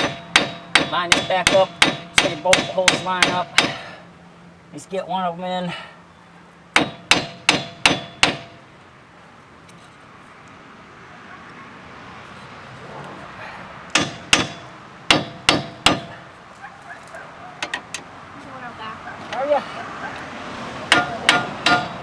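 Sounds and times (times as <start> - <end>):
hammer blows on metal: 0.0 - 4.1, 6.8 - 8.6, 13.9 - 16.2, 20.9 - 22.0.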